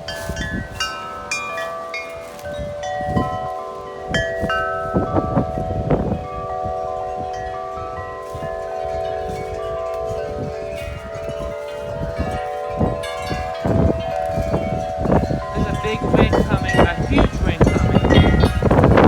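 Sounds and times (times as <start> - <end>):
low wind rumble: 0.0 - 19.0
metal wind chimes ringing: 0.0 - 19.0.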